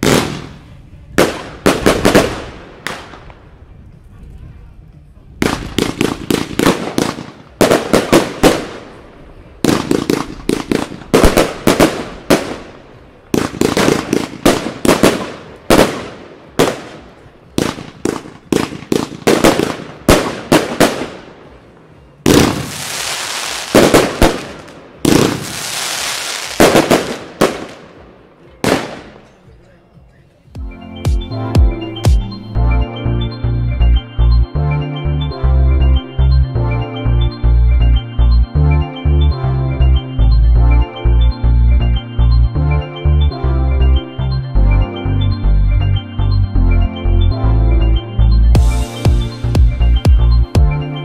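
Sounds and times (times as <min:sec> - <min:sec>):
fireworks launch and break reports: 0:00.0 - 0:03.6, 0:05.4 - 0:29.5
fireworks hissing: 0:22.3 - 0:27.4.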